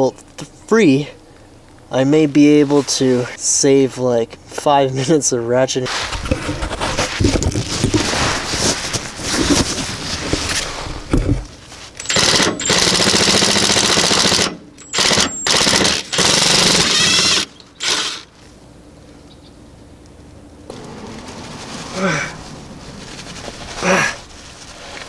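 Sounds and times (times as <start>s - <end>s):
impact wrench rattling: 12.0s - 18.4s.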